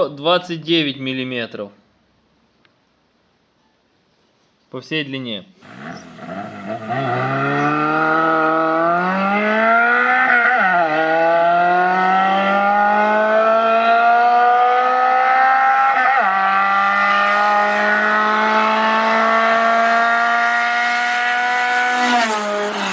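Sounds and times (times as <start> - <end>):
car engine accelerating hard: 5.6 - 22.9.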